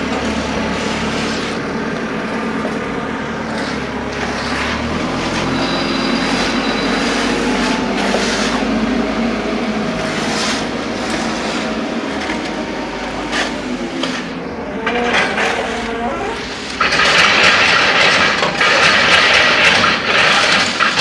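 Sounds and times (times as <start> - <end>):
engine running steadily: 0.0 - 21.0
scrapes and knocks: 3.4 - 8.7, 16.8 - 21.0.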